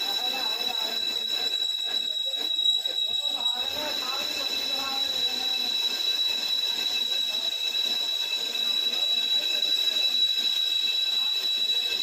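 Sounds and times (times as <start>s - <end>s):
lathe machining with high squeal: 0.0s - 12.0s.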